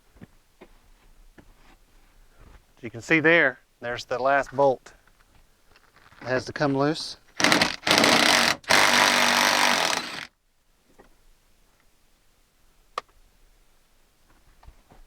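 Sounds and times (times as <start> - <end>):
power tool spinning out bolt: 7.4 - 10.3.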